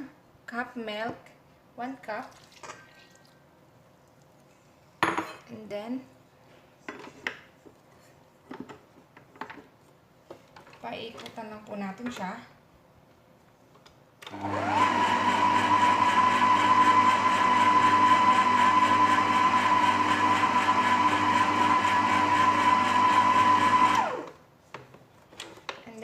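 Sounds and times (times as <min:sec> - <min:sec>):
stand mixer motor whine: 0:14.3 - 0:24.3.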